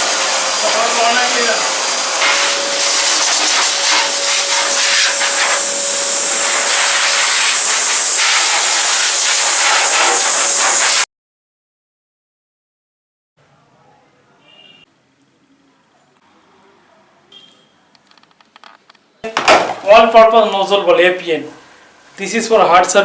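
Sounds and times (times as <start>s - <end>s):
vacuum cleaner running: 0.0s - 11.0s.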